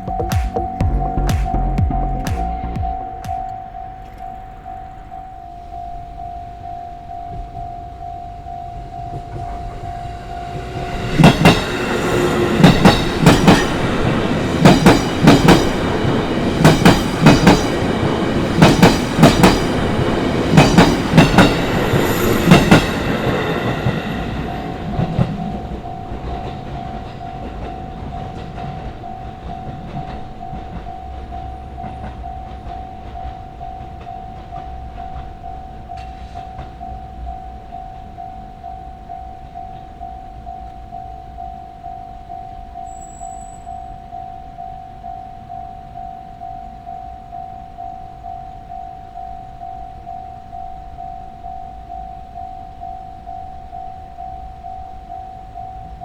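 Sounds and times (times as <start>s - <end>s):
train rumble: 0.0s - 44.1s
level crossing warning bell: 0.0s - 56.0s
train wheels clacking on rail joints: 9.0s - 36.9s.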